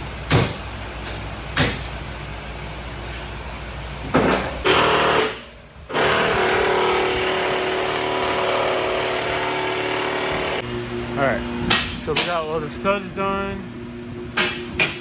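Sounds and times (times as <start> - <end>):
power tool running: 4.6 - 11.4.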